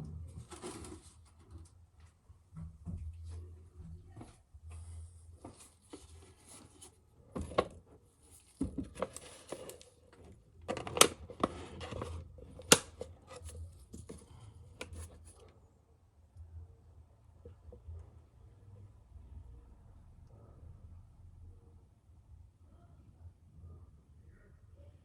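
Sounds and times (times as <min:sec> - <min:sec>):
objects being handled: 0:04.2 - 0:15.6.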